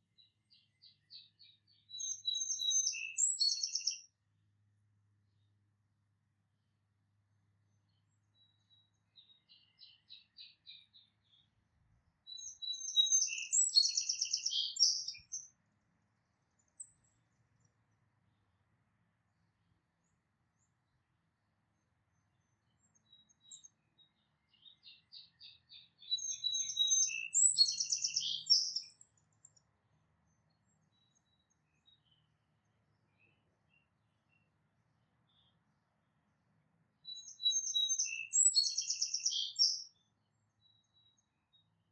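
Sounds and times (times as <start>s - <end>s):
songbird singing: 0.0s - 4.2s, 5.0s - 36.3s, 36.9s - 41.9s.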